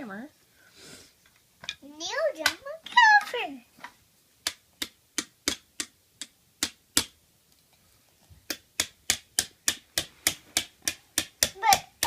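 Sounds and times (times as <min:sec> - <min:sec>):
toy hammer tapping on wood: 0:04.4 - 0:07.2, 0:08.4 - 0:12.0.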